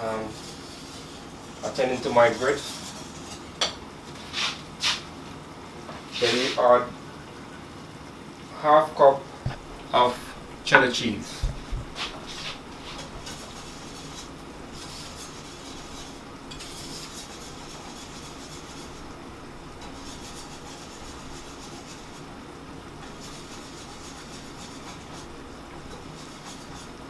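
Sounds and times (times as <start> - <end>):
spoon stirring grits in a pot: 0.0 - 5.0, 10.7 - 27.0
steady background hum: 0.0 - 27.0.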